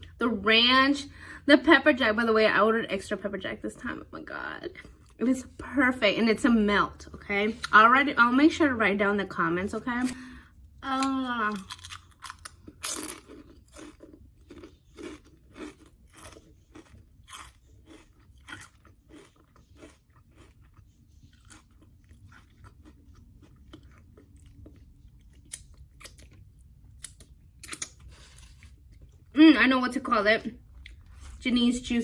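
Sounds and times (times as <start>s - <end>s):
person chewing crunchy food: 10.0s - 29.3s.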